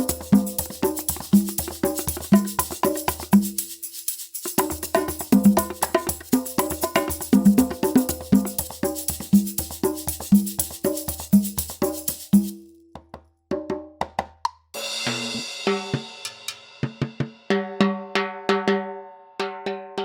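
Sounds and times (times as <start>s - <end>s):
pitched percussion hits: 14.8s - 17.7s.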